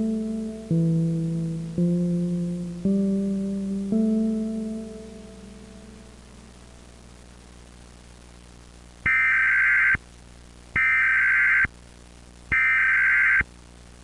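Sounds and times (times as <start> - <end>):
faint steady hiss: 0.0 - 14.0.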